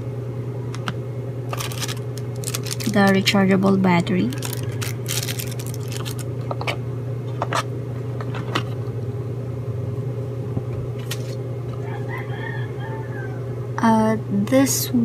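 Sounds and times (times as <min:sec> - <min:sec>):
steady low hum: 0:00.0 - 0:15.0
plastic packaging clicks: 0:01.5 - 0:03.2, 0:04.3 - 0:06.7.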